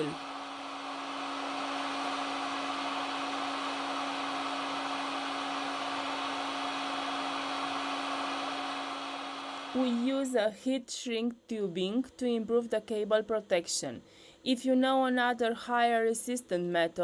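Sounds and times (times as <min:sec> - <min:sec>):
low hum: 0:00.0 - 0:10.4.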